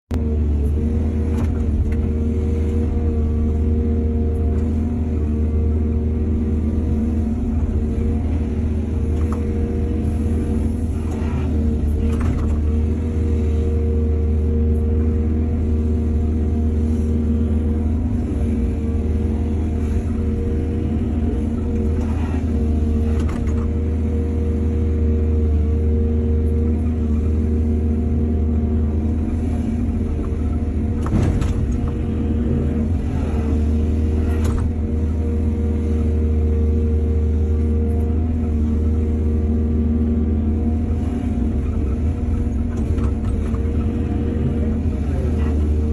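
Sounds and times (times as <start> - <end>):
excavator diesel engine running: 0.1 - 45.9.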